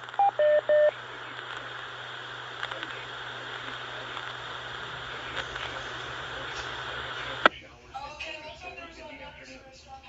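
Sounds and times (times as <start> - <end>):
faint clicks: 0.0 - 7.5
radio receiver hiss: 0.0 - 7.6
spoken announcement over radio: 0.0 - 10.0.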